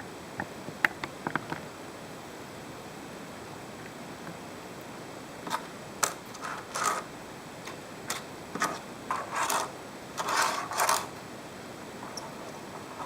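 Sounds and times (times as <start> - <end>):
plastic toy clicking and scraping: 5.5 - 7.1, 8.1 - 11.1.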